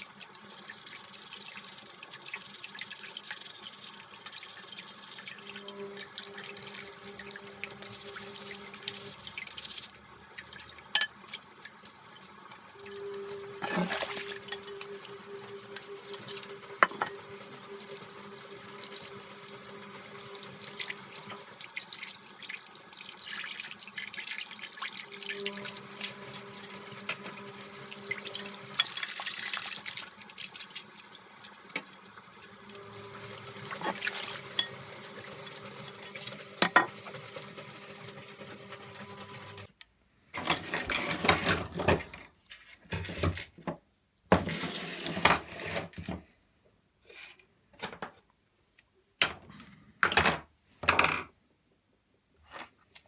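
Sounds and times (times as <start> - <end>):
tap water running into sink: 0.0 - 37.6.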